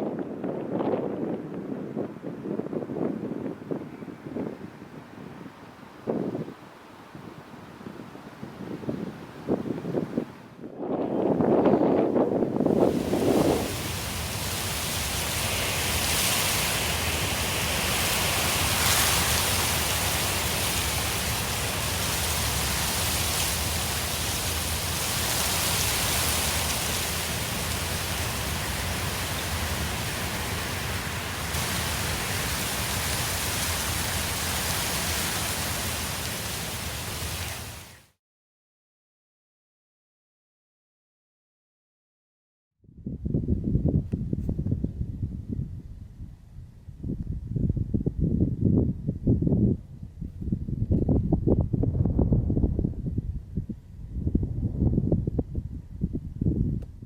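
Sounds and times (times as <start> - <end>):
falling water hiss: 12.6 - 38.1.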